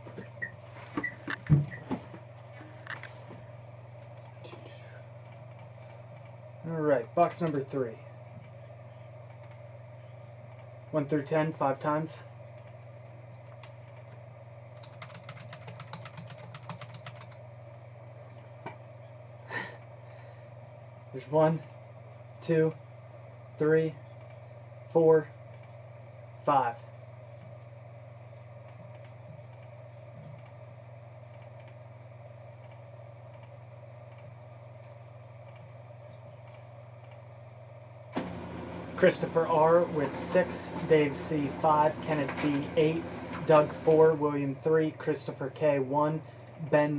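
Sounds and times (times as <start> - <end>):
steady low hum: 0.0 - 46.9
keyboard typing: 13.6 - 17.4, 28.6 - 30.6.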